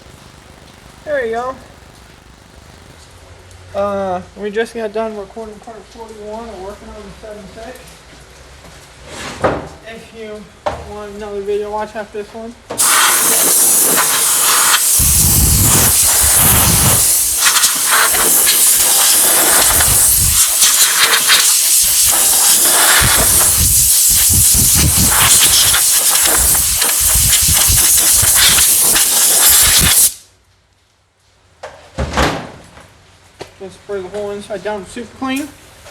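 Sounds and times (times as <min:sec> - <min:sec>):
pressurized nozzle hissing: 0:12.8 - 0:30.3.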